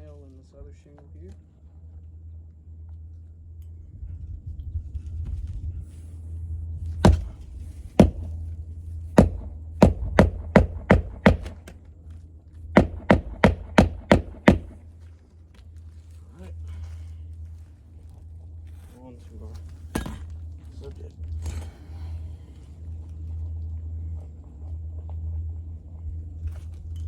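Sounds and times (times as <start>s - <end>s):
steady low rumble: 0.0s - 27.0s
hammer striking roofing nails: 7.0s - 7.4s, 8.0s - 8.4s, 9.2s - 11.8s, 12.8s - 14.8s.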